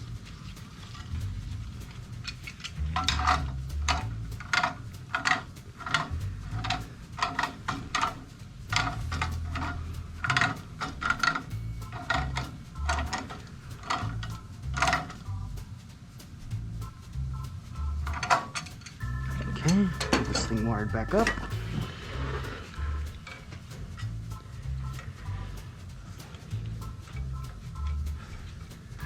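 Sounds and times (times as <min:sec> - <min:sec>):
metal tools clinking and scraping: 0:02.2 - 0:15.3, 0:18.1 - 0:24.2.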